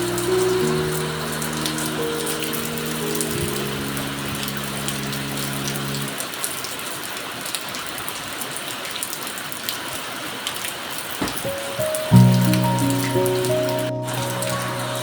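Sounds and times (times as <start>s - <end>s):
low held music chord: 0.0s - 6.1s, 11.6s - 15.0s
steady rain falling: 0.0s - 15.0s.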